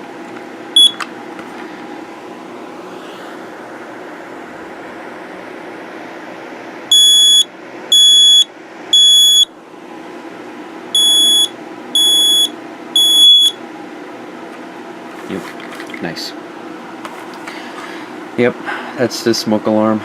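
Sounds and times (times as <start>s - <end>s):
smoke alarm beeping: 0.8s - 1.0s, 6.9s - 9.5s, 10.9s - 13.6s.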